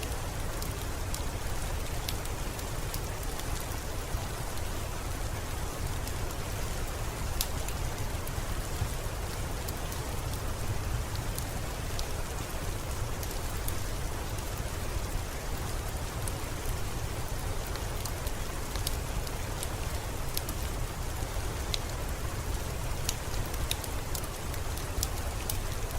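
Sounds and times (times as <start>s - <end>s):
steady rain falling: 0.0s - 25.9s
wood fire crackling: 15.0s - 25.9s.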